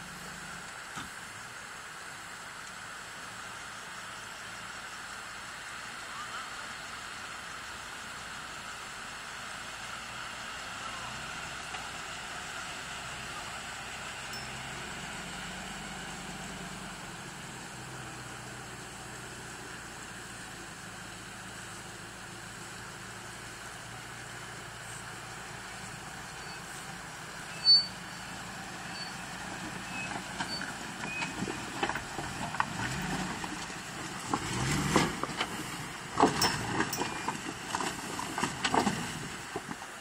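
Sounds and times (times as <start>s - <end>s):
off-road vehicle engine running: 0.0s - 40.0s
knocks and crunches over rough ground: 28.6s - 40.0s.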